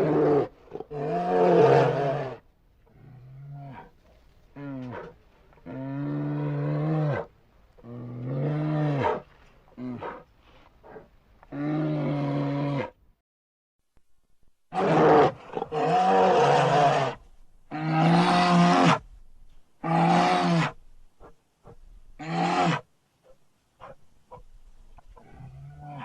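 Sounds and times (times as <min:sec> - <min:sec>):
bear roaring: 0:00.0 - 0:03.9, 0:14.7 - 0:19.0.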